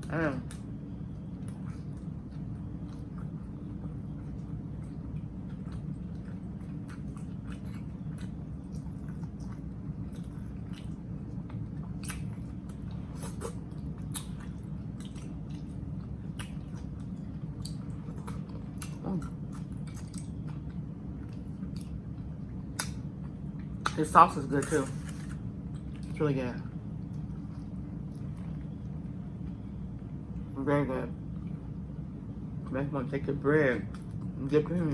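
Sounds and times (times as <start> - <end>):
chewing sandwich: 0.0 - 30.6, 33.8 - 34.9
steady low hum: 0.0 - 34.9.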